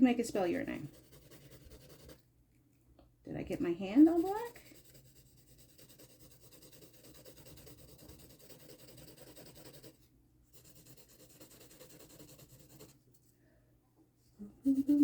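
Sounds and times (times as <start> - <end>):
drawing tool scratching on paper: 0.4 - 2.2, 4.0 - 13.1.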